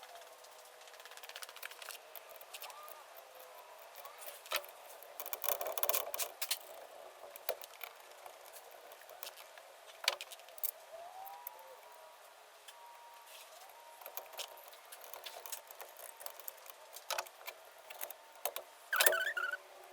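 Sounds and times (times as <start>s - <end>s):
small metal parts clinking: 14.0s - 19.4s.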